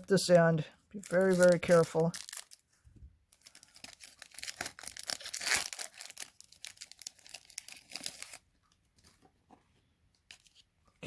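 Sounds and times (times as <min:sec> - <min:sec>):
card pack wrapper tearing and crinkling: 0:01.0 - 0:02.7, 0:03.3 - 0:08.5.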